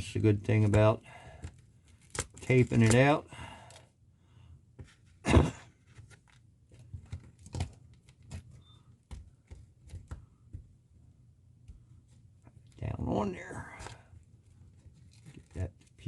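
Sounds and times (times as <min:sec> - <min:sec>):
hands handling small objects: 0:00.6 - 0:03.8, 0:13.6 - 0:16.0.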